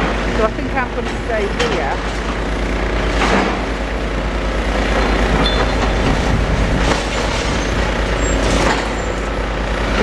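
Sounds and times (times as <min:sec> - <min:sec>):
excavator diesel engine rumbling: 0:00.0 - 0:10.0
building material breaking: 0:05.8 - 0:09.2.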